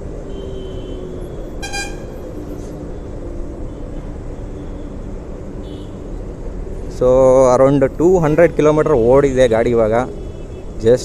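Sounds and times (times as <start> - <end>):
road traffic rumble: 0.0 - 11.0
vehicle horn toot: 1.6 - 2.3.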